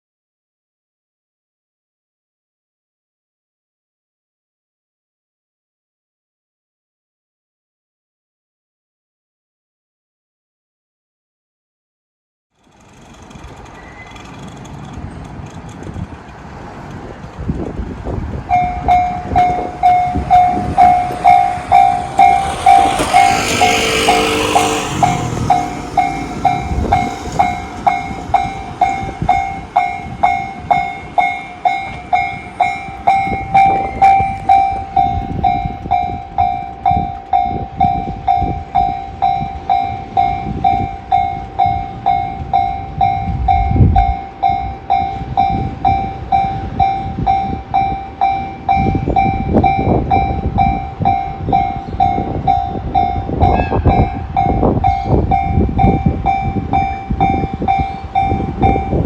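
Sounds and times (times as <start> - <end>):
train wheels clacking on rails: 12.6 - 43.2
freight train rumbling: 12.6 - 59.0
level-crossing alarm ringing: 18.5 - 43.3.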